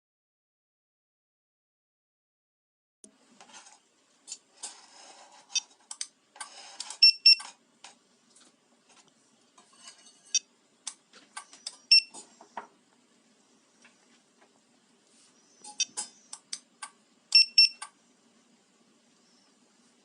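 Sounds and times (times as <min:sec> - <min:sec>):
short high electronic beeps: 0:07.0 - 0:07.5, 0:11.9 - 0:12.1, 0:17.3 - 0:17.8.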